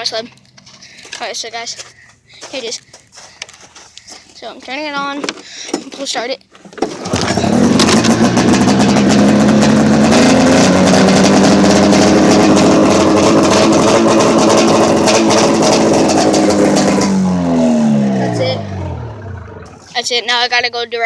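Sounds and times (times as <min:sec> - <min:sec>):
snowmobile engine running: 0:07.0 - 0:19.9.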